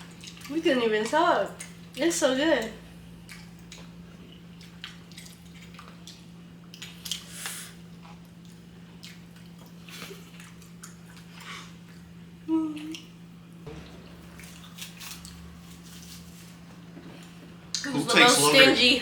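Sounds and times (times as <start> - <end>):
soft chewing and mouth noises: 0.0 - 13.3
steady low hum: 0.0 - 19.0.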